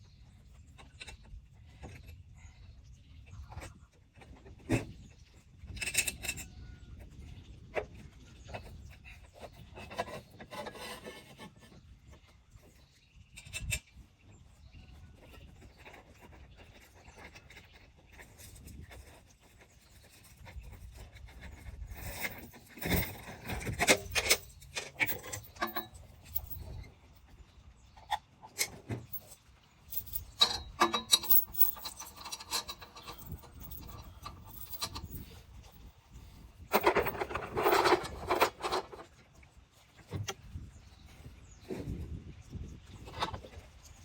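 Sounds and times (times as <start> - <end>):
rubbing and scraping: 9.3 - 12.8, 15.2 - 26.9, 28.5 - 40.3.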